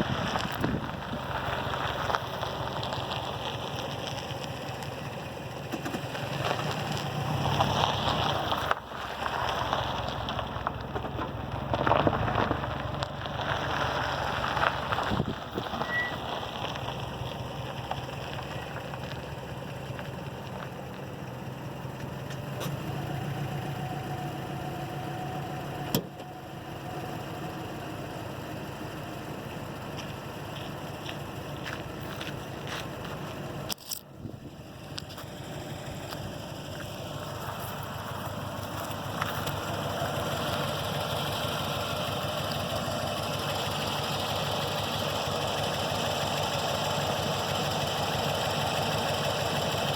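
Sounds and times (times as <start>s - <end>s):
brake squeak: 13.9s - 21.1s, 21.9s - 23.2s.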